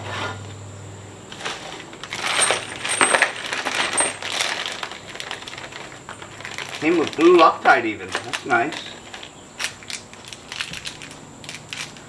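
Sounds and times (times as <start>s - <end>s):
metal bolts clinking: 2.2s - 4.9s.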